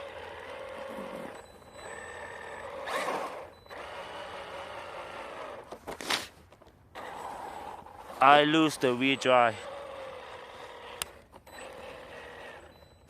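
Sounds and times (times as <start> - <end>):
electric motor whining: 0.0 - 5.8, 6.9 - 13.0.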